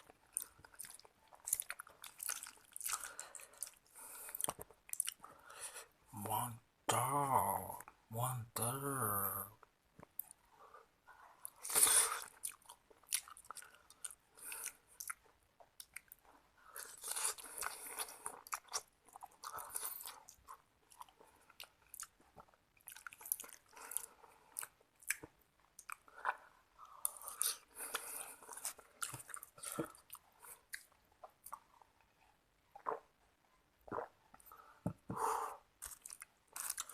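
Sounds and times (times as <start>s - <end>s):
close chewing and biting: 0.0s - 5.3s, 11.3s - 33.0s, 35.8s - 36.9s.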